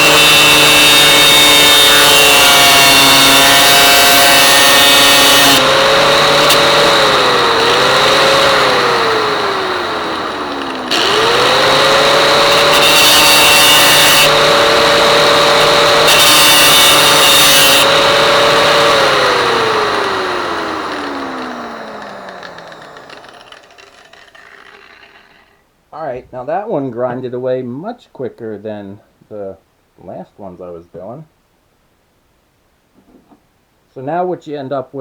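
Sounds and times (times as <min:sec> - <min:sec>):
grinder motor running: 0:00.0 - 0:25.6
grinding wheel scraping metal: 0:00.0 - 0:25.6.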